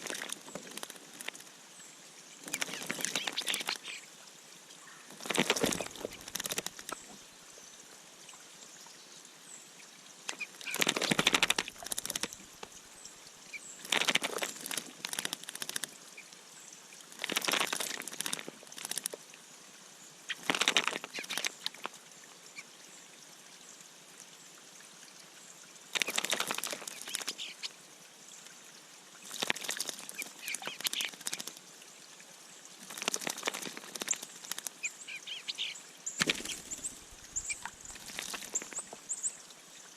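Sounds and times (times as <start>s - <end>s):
bird splashing in water: 0.0s - 1.5s, 2.4s - 4.0s, 4.9s - 7.2s, 10.3s - 12.8s, 13.8s - 15.9s, 17.1s - 19.1s, 20.3s - 21.9s, 25.9s - 27.6s, 29.2s - 31.6s, 32.8s - 39.1s.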